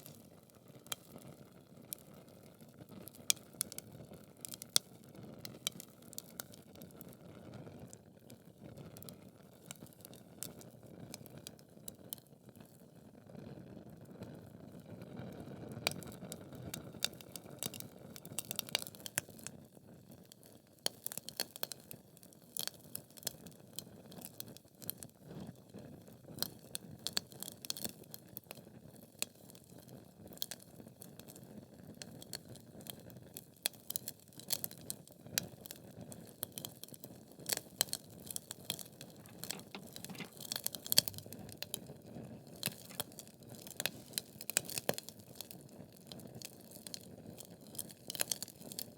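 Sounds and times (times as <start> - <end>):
logs crackling and popping: 39.2 - 41.7.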